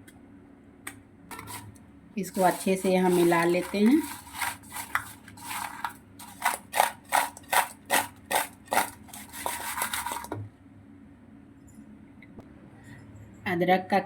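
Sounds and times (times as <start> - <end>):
candy balls scraping in sugar: 1.4 - 10.4.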